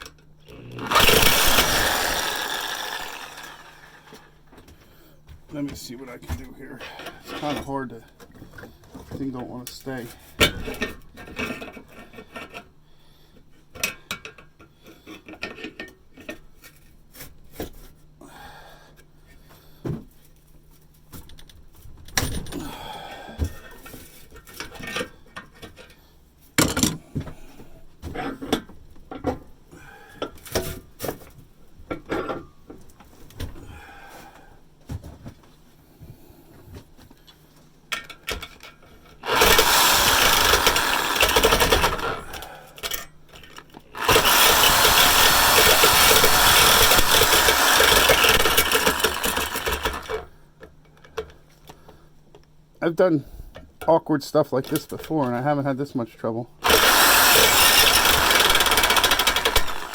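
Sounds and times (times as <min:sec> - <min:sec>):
loud steady cutting noise: 0:00.6 - 0:04.3, 0:39.2 - 0:42.5, 0:44.0 - 0:50.1, 0:56.6 - 0:59.9.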